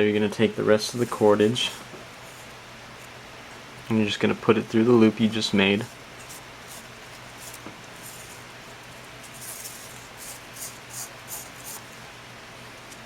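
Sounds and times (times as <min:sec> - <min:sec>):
cord sliding and rubbing: 0:05.9 - 0:11.9.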